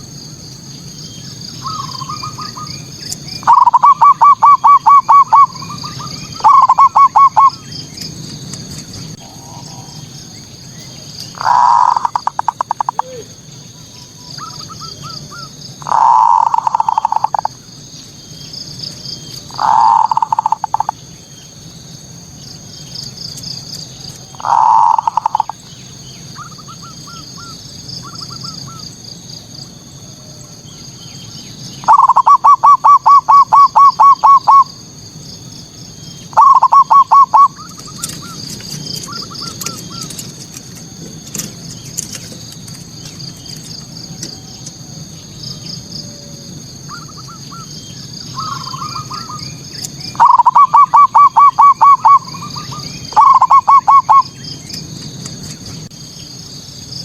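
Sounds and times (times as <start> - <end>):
high insect buzz: 0.0 - 57.0
dove cooing: 1.6 - 7.6, 9.0 - 17.6, 19.5 - 21.0, 24.3 - 25.6, 31.8 - 34.8, 36.3 - 38.4, 50.1 - 54.3.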